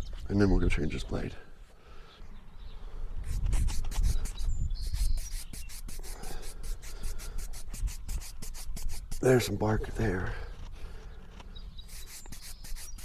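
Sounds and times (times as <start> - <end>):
brush scraping sawdust off wood: 3.3 - 9.6, 10.6 - 13.0.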